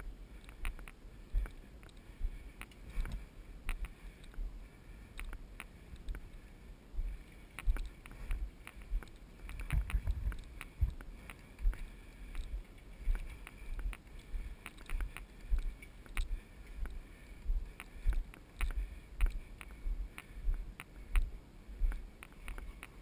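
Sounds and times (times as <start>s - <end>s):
sharp clicks: 0.4s - 4.4s, 7.5s - 21.3s.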